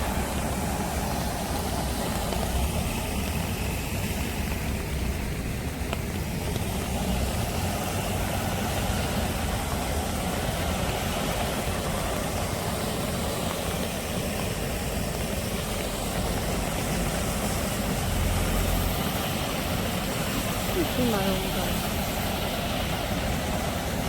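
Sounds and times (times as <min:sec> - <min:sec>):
low rumble of traffic: 0:00.0 - 0:24.0
rain hiss: 0:00.0 - 0:24.0
running stream water: 0:00.0 - 0:24.0.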